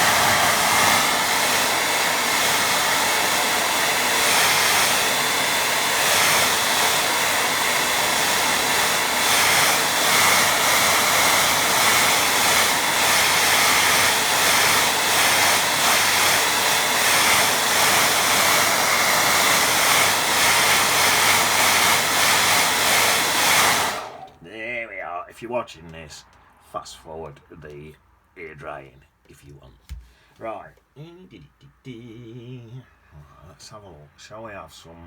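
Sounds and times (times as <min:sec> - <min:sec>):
hair dryer blowing: 0:00.0 - 0:24.4.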